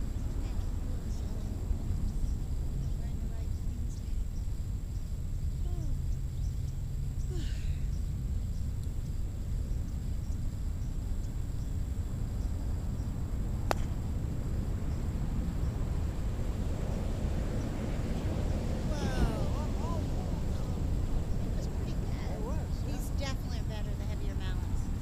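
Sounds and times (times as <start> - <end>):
faint bird chirps: 0.0 - 13.2
wind rumble on microphone: 0.0 - 25.0
mallet striking ball: 13.7 - 13.9.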